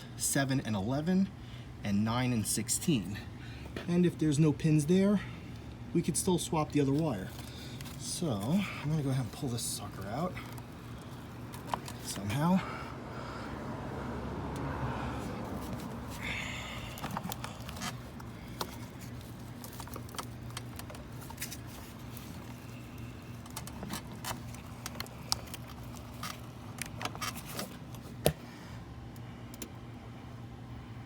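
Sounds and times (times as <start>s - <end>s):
plastic connector clicking and rattling: 16.9s - 28.4s.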